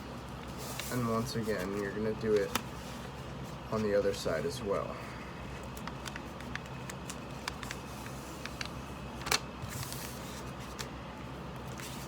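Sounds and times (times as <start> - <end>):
paper rustle: 0.4 - 4.0, 9.2 - 10.9, 11.6 - 12.0
paper crackling: 5.7 - 8.6, 9.2 - 10.9.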